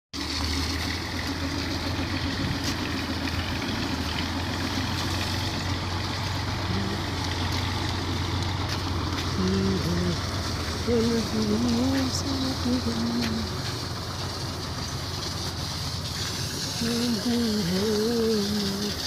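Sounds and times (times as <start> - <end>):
low hum with noise: 0.2 - 19.0.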